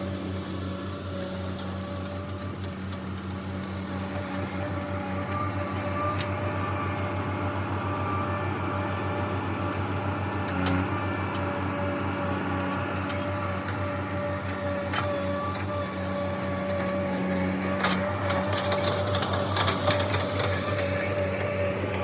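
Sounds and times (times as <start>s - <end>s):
diesel engine running: 0.0s - 22.0s.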